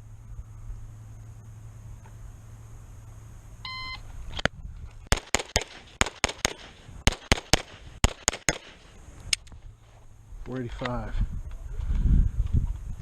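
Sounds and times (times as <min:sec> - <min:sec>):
shot timer beep: 0:03.7 - 0:04.0
pistol shots: 0:05.1 - 0:08.9.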